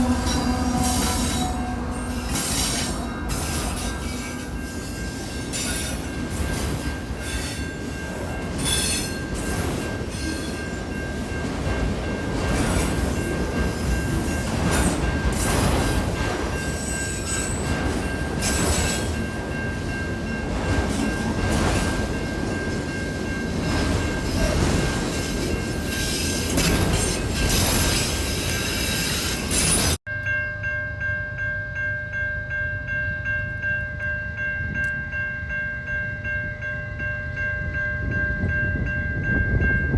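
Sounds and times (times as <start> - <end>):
wheels clacking over rail joints: 0.0 - 30.0
railroad wheels rumbling: 0.0 - 30.1, 32.9 - 39.9.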